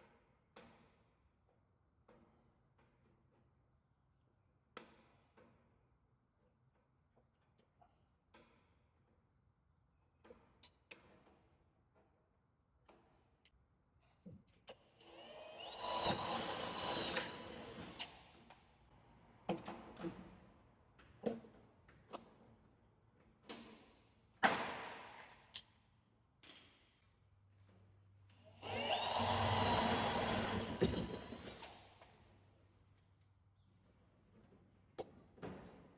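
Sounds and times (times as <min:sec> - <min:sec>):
power drill boring metal: 0:14.8 - 0:18.2, 0:28.4 - 0:31.8.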